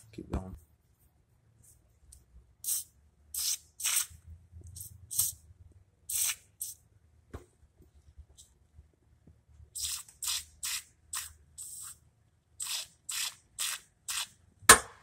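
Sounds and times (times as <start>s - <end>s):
aerosol can hissing spurts: 2.6s - 4.1s, 6.1s - 6.8s, 9.8s - 12.0s, 12.6s - 14.3s.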